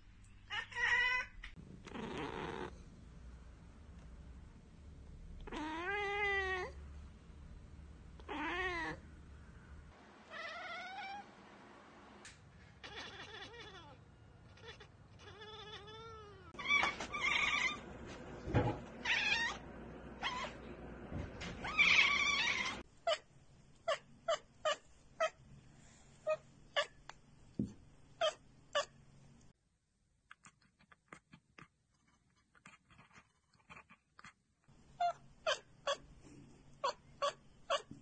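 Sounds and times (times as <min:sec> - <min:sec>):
cat chirping and trilling: 0:08.3 - 0:09.0, 0:10.3 - 0:11.2, 0:12.8 - 0:17.8, 0:19.0 - 0:19.6, 0:20.2 - 0:20.6, 0:21.6 - 0:23.2
cat chattering: 0:12.8 - 0:17.8.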